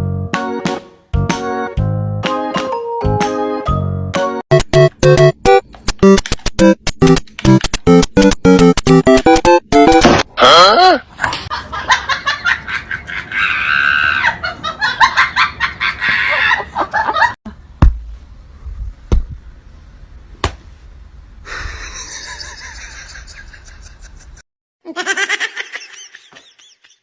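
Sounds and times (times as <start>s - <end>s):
people laughing: 11.3s - 17.4s, 21.6s - 27.0s.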